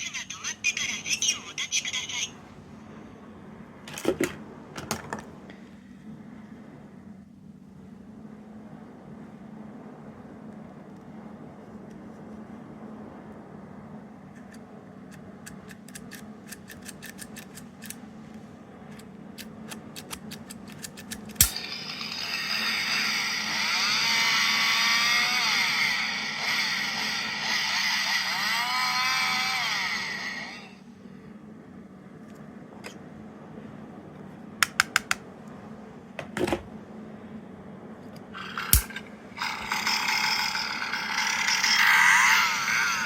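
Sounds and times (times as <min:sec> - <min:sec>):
toy speaker sound effect: 0:00.0 - 0:02.4, 0:22.1 - 0:30.7.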